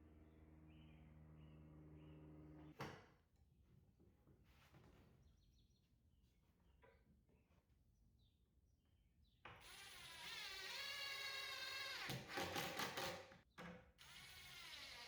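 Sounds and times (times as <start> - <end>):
power drill driving screw: 9.6 - 13.2, 14.0 - 15.0.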